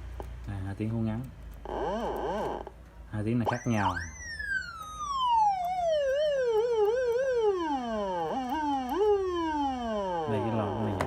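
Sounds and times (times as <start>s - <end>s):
electronic motorbike siren wailing: 3.4s - 11.0s.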